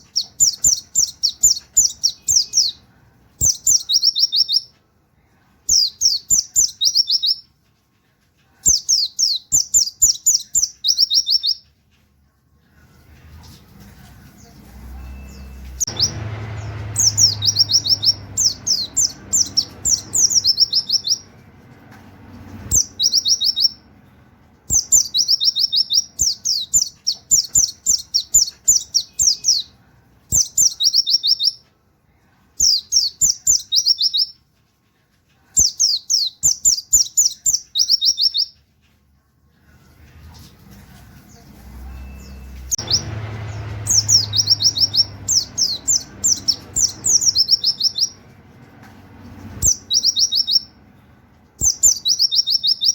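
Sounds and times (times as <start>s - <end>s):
bird singing fast high notes: 15.0s - 21.3s, 42.0s - 48.2s.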